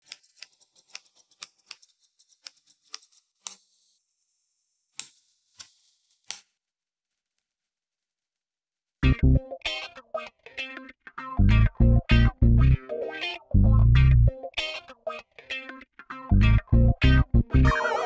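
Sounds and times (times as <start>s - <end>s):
scissors snipping: 0.0s - 3.6s.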